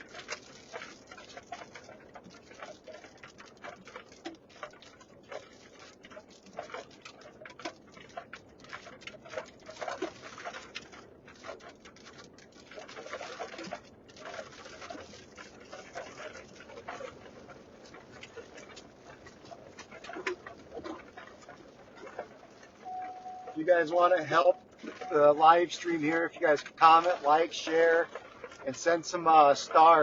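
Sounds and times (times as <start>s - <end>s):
drops ticking on roof and glass: 0.0s - 30.0s
light rain pattering: 0.0s - 30.0s.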